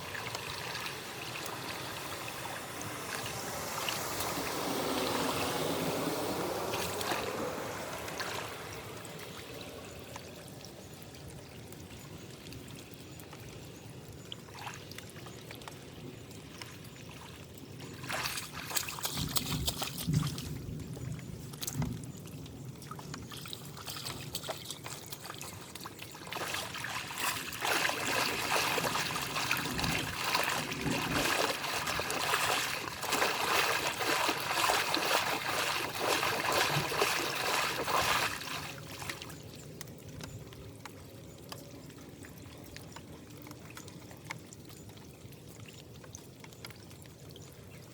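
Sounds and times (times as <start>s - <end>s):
water trickling and pouring: 0.0s - 47.9s.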